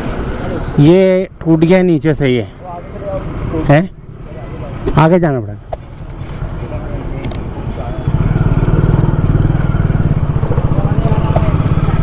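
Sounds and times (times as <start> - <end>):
motorcycle engine running: 5.8 - 12.0.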